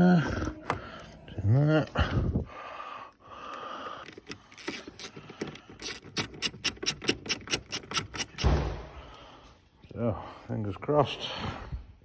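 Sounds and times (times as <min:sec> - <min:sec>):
sharp ratcheting clicks: 0:04.0 - 0:08.5.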